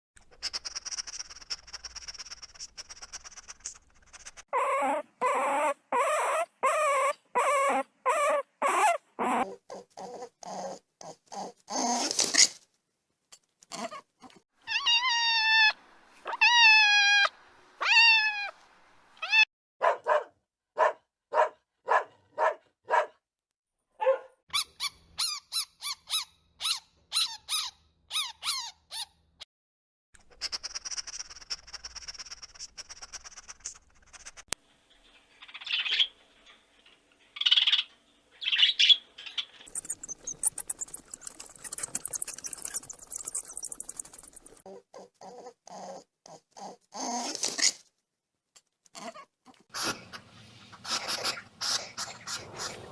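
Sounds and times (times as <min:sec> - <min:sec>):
animal calls: 0:04.2 - 0:12.5
rapid high squeaks: 0:39.6 - 0:44.6.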